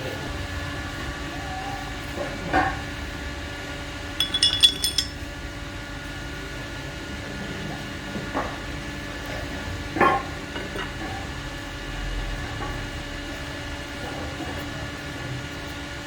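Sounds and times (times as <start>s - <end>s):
steady background hum: 4.0s - 5.5s
small metal parts clinking: 4.2s - 5.2s.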